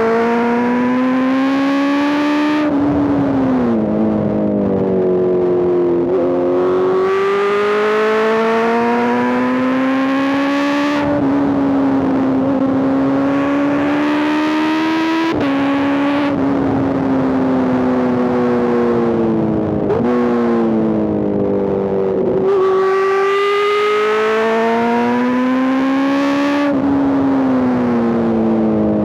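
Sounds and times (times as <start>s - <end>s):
motorcycle engine revving: 6.0s - 28.9s.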